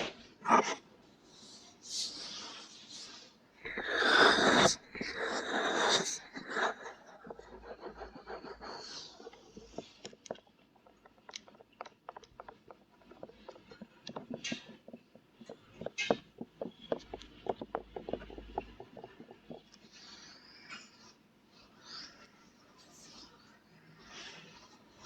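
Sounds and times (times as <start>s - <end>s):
light scratches and clicks: 3.6s - 21.2s.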